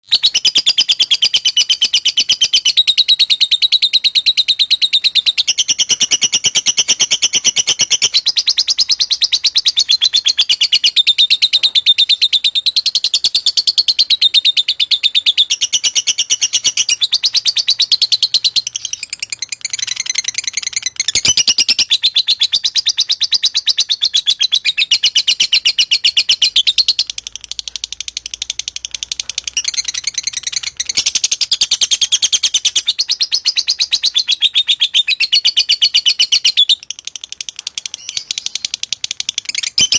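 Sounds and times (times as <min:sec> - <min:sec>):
lovebird chattering: 0:00.1 - 0:39.9.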